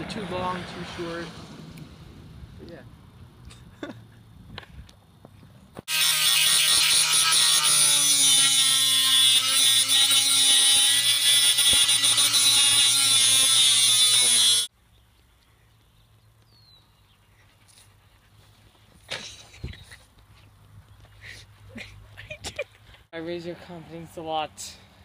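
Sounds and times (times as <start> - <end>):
power tool whining: 5.9 - 14.7.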